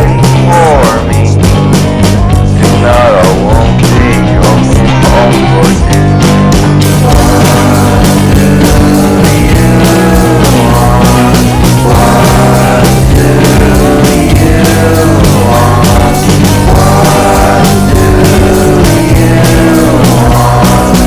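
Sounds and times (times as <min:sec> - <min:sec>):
rock song with guitar and vocals: 0:00.0 - 0:21.0.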